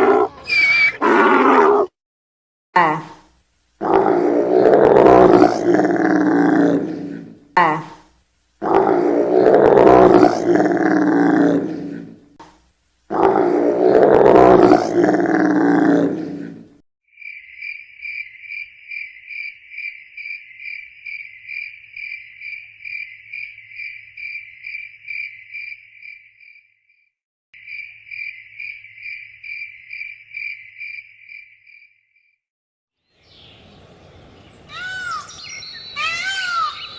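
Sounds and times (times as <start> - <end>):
loud animal roar: 0.0 - 1.9, 3.8 - 8.0, 8.6 - 12.4, 13.1 - 16.8
insect chirping: 17.1 - 27.0, 27.6 - 32.4.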